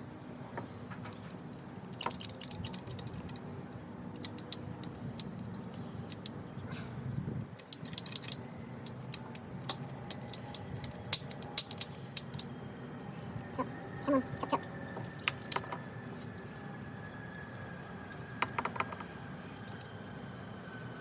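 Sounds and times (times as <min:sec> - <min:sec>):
hand tools clicking: 0:01.9 - 0:03.4, 0:04.2 - 0:06.3, 0:07.4 - 0:12.5, 0:14.0 - 0:16.5, 0:17.3 - 0:19.9.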